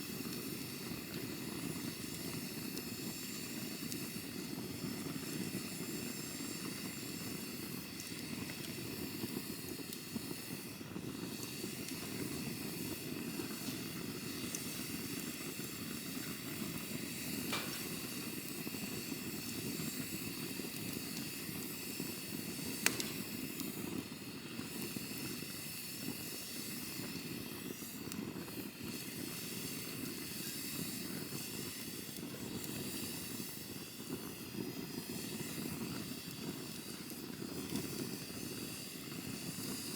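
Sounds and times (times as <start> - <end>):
campfire flames rushing: 0.0 - 39.9.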